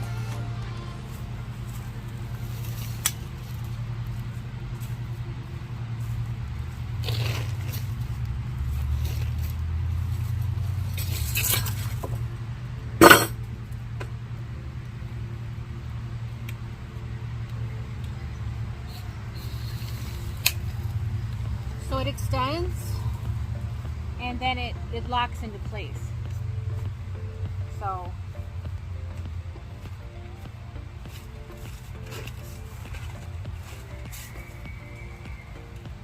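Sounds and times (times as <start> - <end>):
low hum: 0.0 - 36.0
metal frame clinks and sliding: 13.0 - 13.4.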